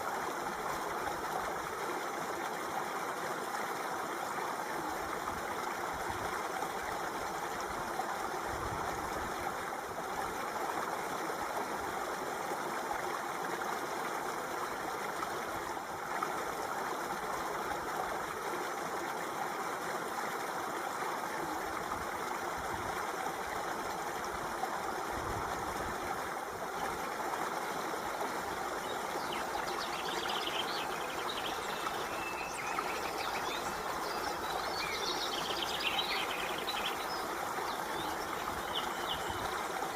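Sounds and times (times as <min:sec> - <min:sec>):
running water: 0:00.0 - 0:39.9
birds chirping: 0:28.8 - 0:39.9.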